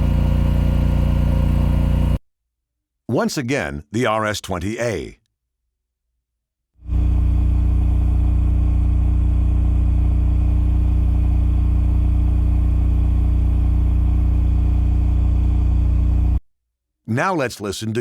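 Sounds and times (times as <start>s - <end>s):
generator engine droning: 0.0s - 2.2s, 6.9s - 16.4s.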